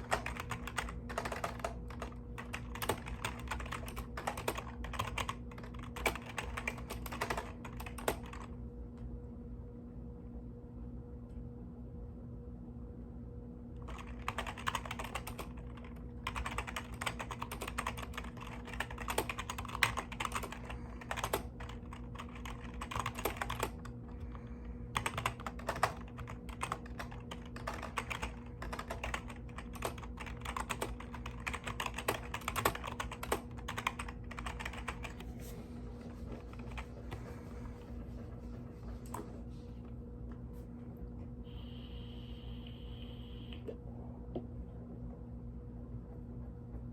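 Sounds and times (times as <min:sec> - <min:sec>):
mechanical keyboard typing: 0:00.0 - 0:08.5, 0:13.8 - 0:24.3, 0:24.9 - 0:35.2.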